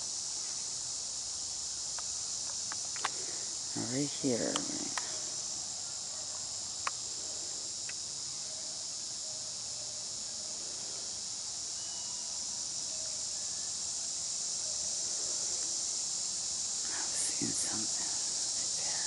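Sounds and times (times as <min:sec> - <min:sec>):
insects chirring: 0:00.0 - 0:19.0.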